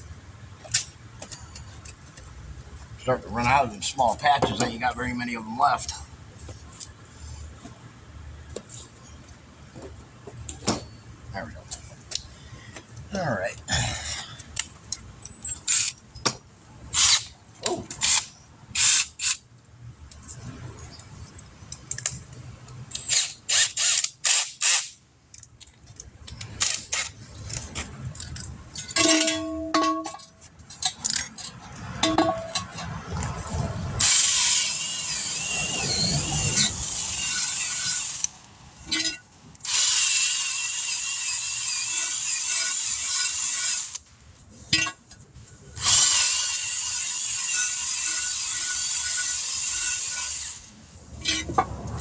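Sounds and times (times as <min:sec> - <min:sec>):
tools clicking and rattling: 0:21.3 - 0:34.8
power tool whining: 0:34.0 - 0:38.4, 0:45.8 - 0:50.7.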